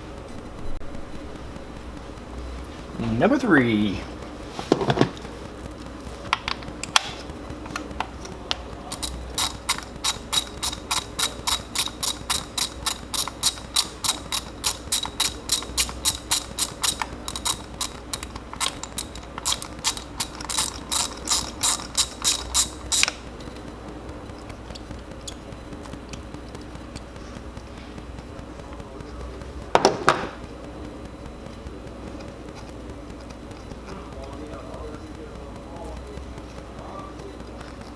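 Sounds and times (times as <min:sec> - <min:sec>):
ratchet wrench clicking: 0:08.9 - 0:23.6.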